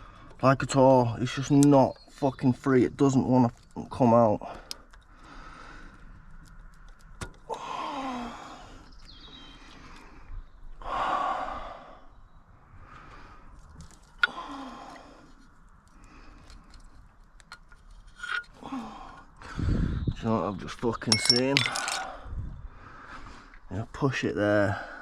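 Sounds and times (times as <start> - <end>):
man sighing heavily: 7.5 - 8.8.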